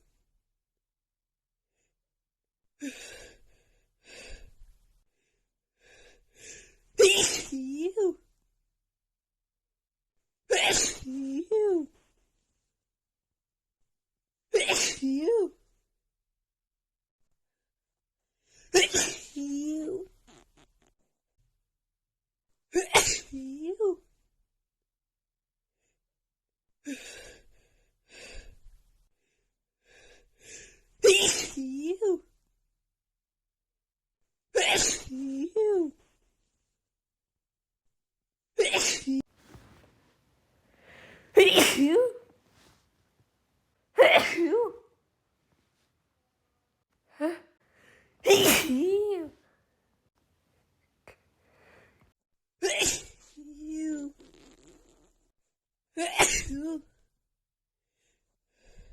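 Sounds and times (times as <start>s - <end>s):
woman sneezing: 7.0s - 7.6s, 10.5s - 11.2s, 31.0s - 31.6s, 34.6s - 35.2s, 38.6s - 39.2s, 41.3s - 42.2s, 44.0s - 44.8s, 48.2s - 49.3s, 52.6s - 53.1s, 56.0s - 56.8s
woman gasping: 40.8s - 41.5s.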